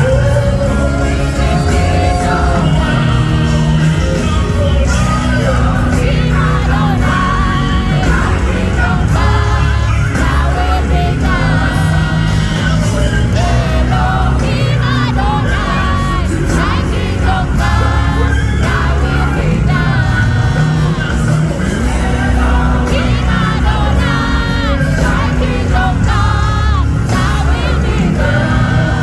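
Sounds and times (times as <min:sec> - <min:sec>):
gospel band playing: 0:00.0 - 0:29.0
wordless singing: 0:00.0 - 0:29.0.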